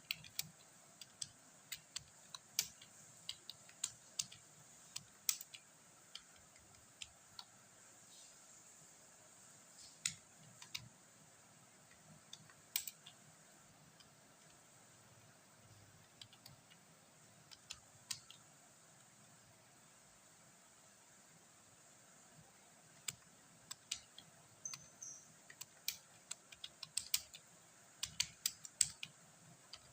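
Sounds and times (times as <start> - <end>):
keyboard keys clicking: 0.0 - 7.6, 11.8 - 13.3, 15.6 - 18.5, 22.9 - 29.9.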